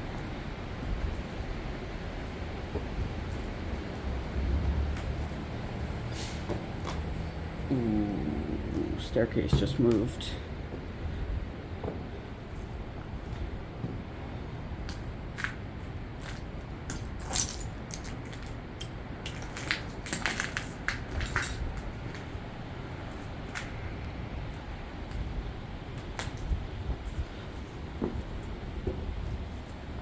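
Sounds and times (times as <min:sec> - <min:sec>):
footsteps on staircase: 0:09.4 - 0:14.1.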